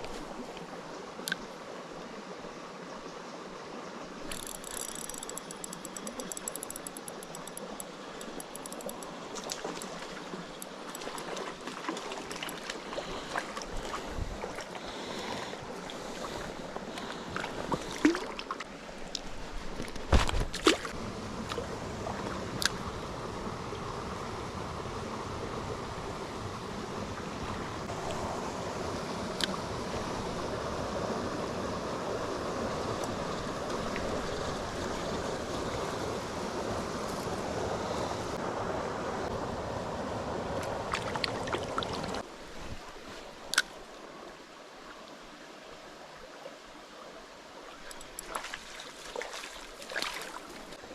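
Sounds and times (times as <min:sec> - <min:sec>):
stream water rushing: 0:00.0 - 0:50.9
water trickling: 0:04.3 - 0:15.2.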